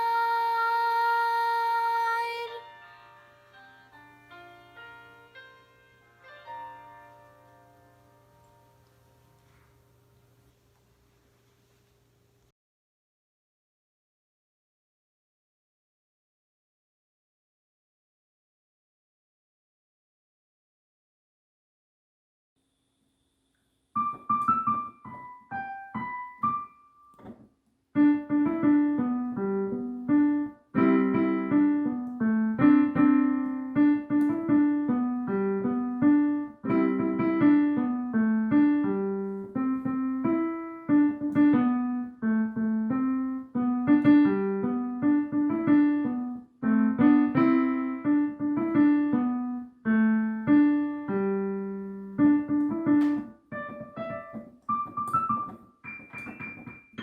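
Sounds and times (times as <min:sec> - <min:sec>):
piano playing: 0:00.0 - 0:09.6, 0:24.0 - 0:27.4, 0:28.0 - 0:57.0.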